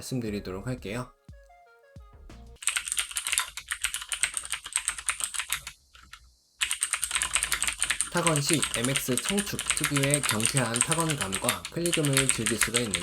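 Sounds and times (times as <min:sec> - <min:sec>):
mechanical keyboard typing: 0:02.6 - 0:13.0.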